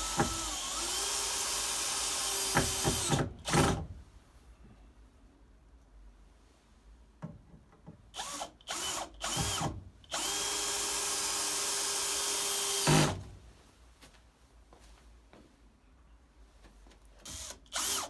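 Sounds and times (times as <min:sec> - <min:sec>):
power drill spinning: 0:00.0 - 0:03.7, 0:08.2 - 0:13.2, 0:17.2 - 0:18.0.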